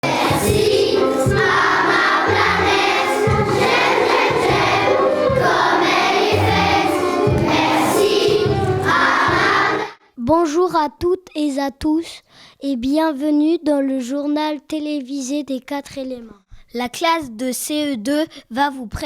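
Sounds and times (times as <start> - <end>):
voices singing: 0.0 - 10.0.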